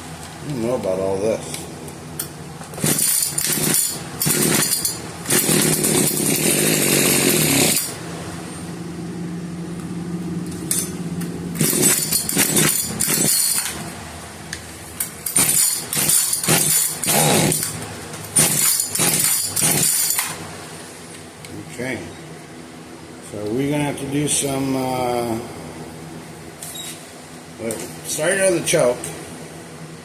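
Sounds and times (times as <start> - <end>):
small two-stroke engine running: 2.8 - 8.0, 11.6 - 13.6, 15.4 - 17.8.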